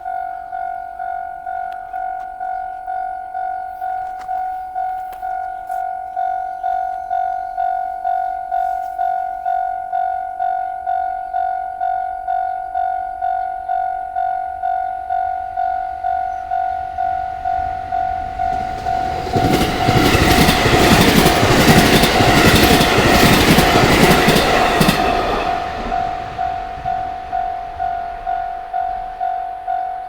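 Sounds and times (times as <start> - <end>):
level-crossing bell dinging: 0.0 - 30.0
rail joint clicks: 1.6 - 30.0
train wheels rushing: 15.4 - 30.0.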